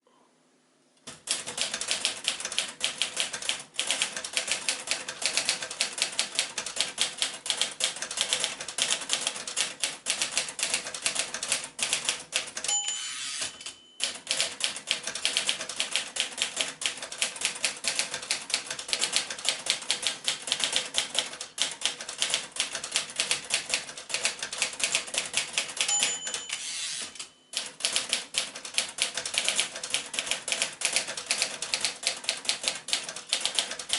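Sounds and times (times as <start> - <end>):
manual typewriter typing: 1.0 - 33.9
typewriter carriage return: 7.8 - 33.9
typewriter bell ringing: 12.6 - 14.5, 25.8 - 27.8.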